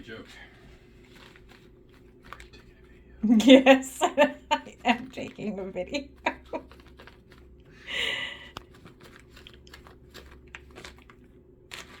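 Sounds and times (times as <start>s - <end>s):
chicken beak clicks and crunches: 6.1s - 12.0s.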